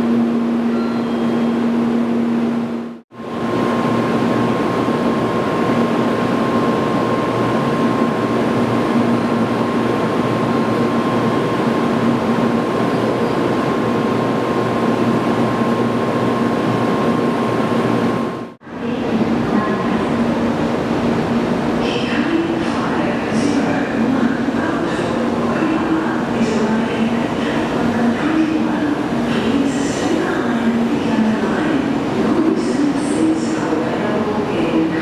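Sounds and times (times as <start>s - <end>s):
stationary train hum: 0.0s - 35.0s.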